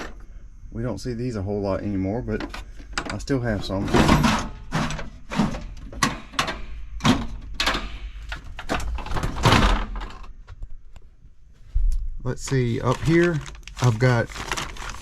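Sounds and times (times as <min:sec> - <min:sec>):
storage bins knocking and rattling: 0:02.3 - 0:10.5.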